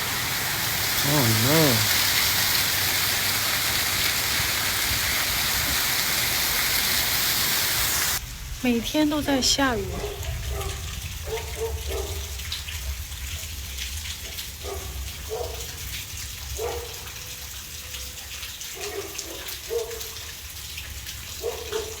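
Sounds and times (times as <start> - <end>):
raindrops ticking: 0.0 - 6.8, 8.2 - 22.0
heavy rain pouring: 0.0 - 22.0.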